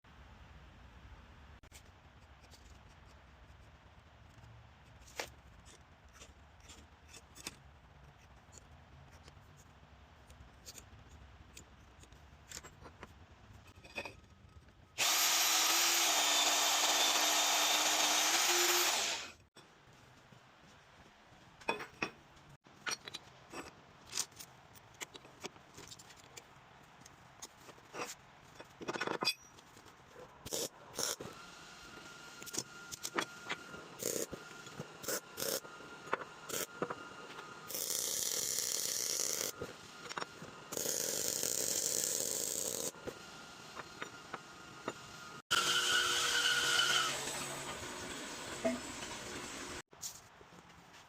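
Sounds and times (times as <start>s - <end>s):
power tool running: 15.0s - 19.4s, 45.5s - 49.8s
clicks and knocks of metal parts: 21.6s - 26.5s, 27.4s - 29.9s.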